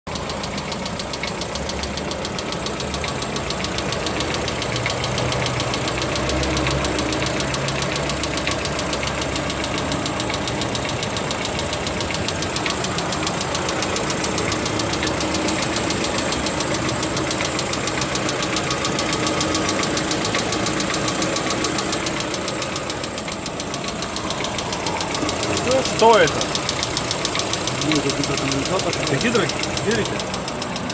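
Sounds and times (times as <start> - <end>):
car engine running: 0.1 - 30.9
rapid even engine ticking: 0.1 - 30.9.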